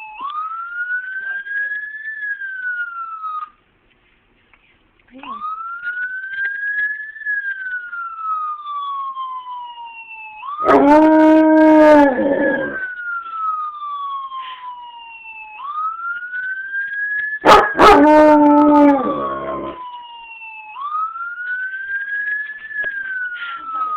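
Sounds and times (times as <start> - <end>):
siren sound effect from laptop: 0.0 - 3.6, 5.3 - 23.9
wolf howling: 10.6 - 12.8, 17.5 - 19.8.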